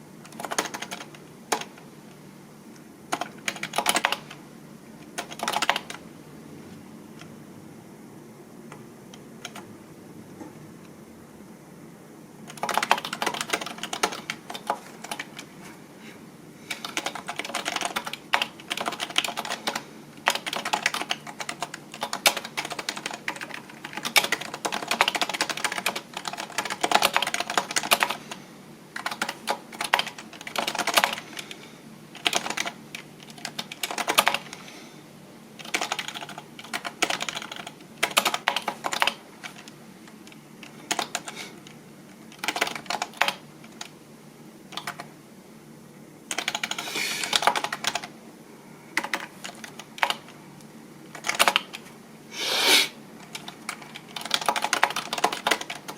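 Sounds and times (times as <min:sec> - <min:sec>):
computer keyboard typing: 0:00.2 - 0:01.9, 0:03.1 - 0:04.4, 0:05.0 - 0:06.0, 0:08.7 - 0:09.7, 0:12.4 - 0:15.6, 0:16.7 - 0:34.6, 0:35.6 - 0:44.0, 0:44.7 - 0:45.1, 0:46.3 - 0:48.2, 0:48.9 - 0:50.4, 0:51.1 - 0:51.9, 0:53.2 - 0:55.9.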